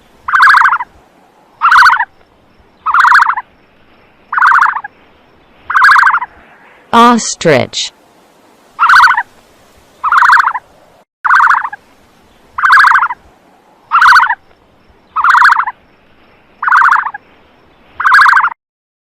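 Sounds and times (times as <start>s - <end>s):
ostrich rattling call: 0.2s - 0.9s, 1.6s - 2.1s, 2.8s - 3.5s, 4.3s - 4.9s, 5.7s - 6.4s, 8.8s - 9.3s, 10.0s - 10.7s, 11.3s - 11.8s, 12.4s - 13.2s, 13.9s - 14.5s, 15.1s - 15.8s, 16.6s - 17.2s, 18.0s - 18.6s.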